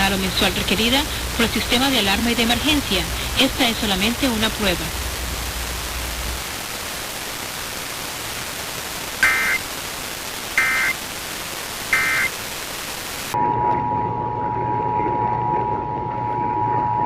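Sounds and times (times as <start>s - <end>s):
radio static hiss: 0.0s - 13.4s
warbling data bursts: 9.0s - 13.4s.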